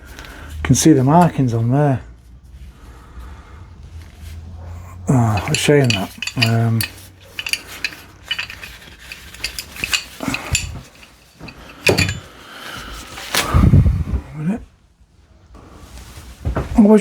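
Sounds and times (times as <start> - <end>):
metal hand tools clinking: 5.1 - 12.4.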